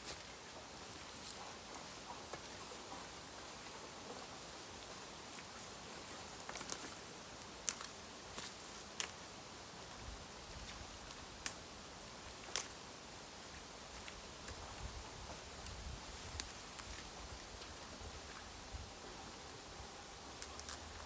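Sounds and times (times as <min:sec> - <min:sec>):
faint outdoor hiss: 0:00.0 - 0:21.0
dry bamboo snapping: 0:06.4 - 0:09.2, 0:11.1 - 0:11.6, 0:12.3 - 0:12.8, 0:15.6 - 0:17.0, 0:20.4 - 0:20.9.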